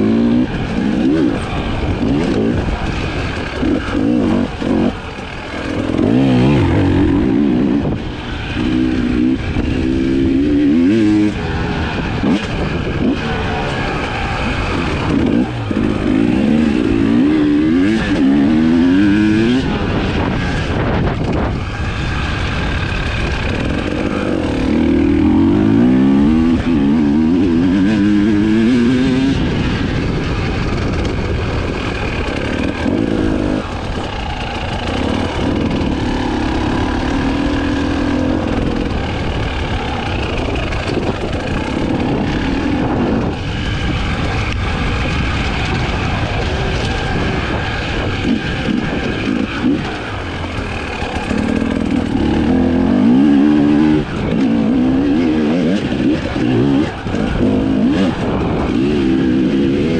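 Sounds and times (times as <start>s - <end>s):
motorcycle engine revving: 0.0s - 59.9s.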